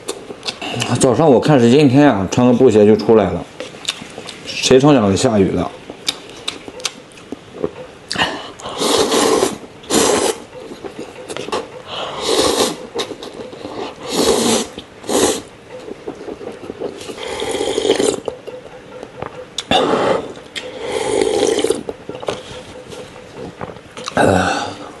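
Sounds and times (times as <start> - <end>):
man slurping noodles: 8.1 - 10.5, 12.0 - 15.5, 16.8 - 18.3, 19.7 - 21.9.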